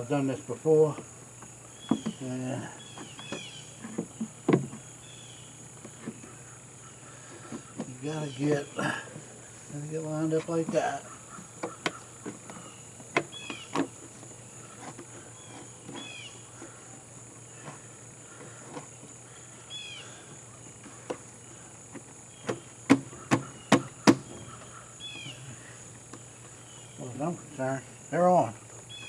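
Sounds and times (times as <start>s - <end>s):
high insect drone: 0.0s - 29.0s
tool clicks and knocks: 11.4s - 14.2s, 21.9s - 24.6s.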